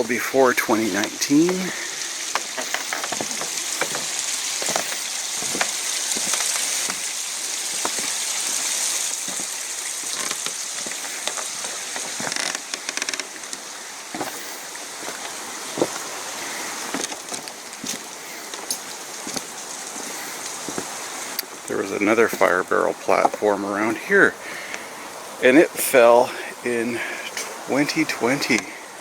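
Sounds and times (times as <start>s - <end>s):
footsteps crunching on gravel: 0.0s - 12.6s, 14.1s - 16.2s, 16.9s - 24.1s
steady high hiss: 0.0s - 29.0s.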